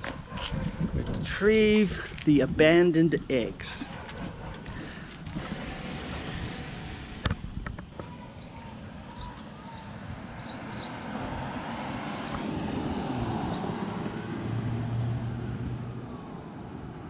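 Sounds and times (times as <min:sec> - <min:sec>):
vehicle passing by: 0:08.2 - 0:17.0.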